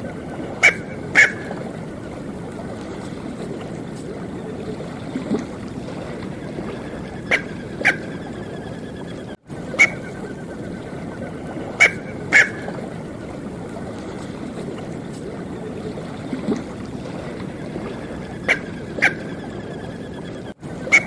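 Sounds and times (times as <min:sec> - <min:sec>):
duck yelping calls: 0:00.6 - 0:01.6, 0:06.5 - 0:08.8, 0:09.7 - 0:12.8.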